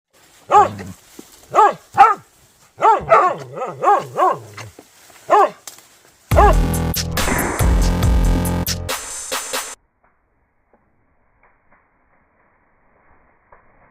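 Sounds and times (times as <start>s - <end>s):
dog barking: 0.5s - 0.9s, 1.5s - 4.7s, 5.3s - 5.6s, 6.4s - 6.6s
electronic music with heavy bass: 6.3s - 9.8s.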